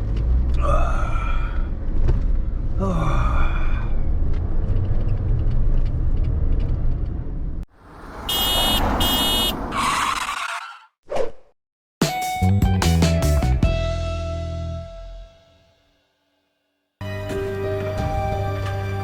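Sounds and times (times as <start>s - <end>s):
car engine and road rumble: 0.0s - 10.8s.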